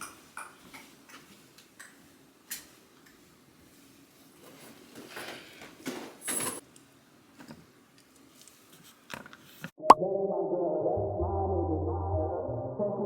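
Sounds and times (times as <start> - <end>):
music: 9.8 - 13.0.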